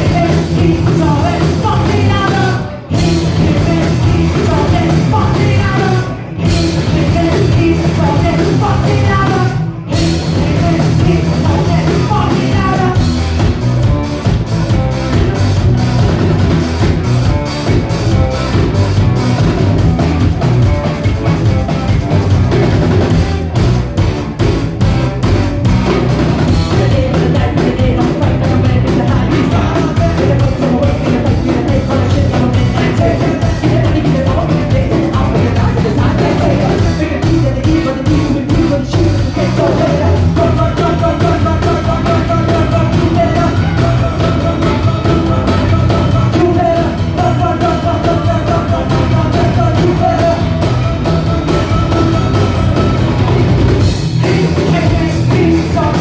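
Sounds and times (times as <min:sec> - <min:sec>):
person singing: 0:00.0 - 0:13.6, 0:26.4 - 0:56.0
fast drumming: 0:00.0 - 0:56.0
rock band playing: 0:00.0 - 0:56.0.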